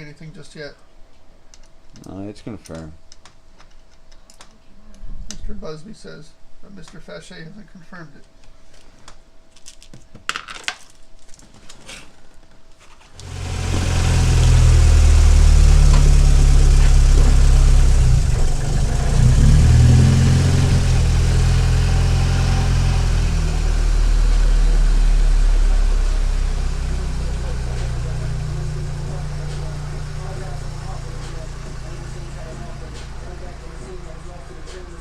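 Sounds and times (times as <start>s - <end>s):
car engine droning: 13.2s - 35.0s.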